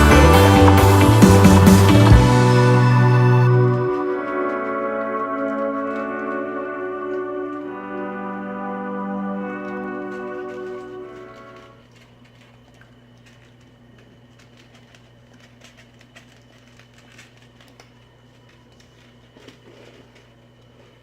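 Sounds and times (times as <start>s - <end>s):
outro music: 0.0s - 11.7s
low hum: 0.0s - 15.0s.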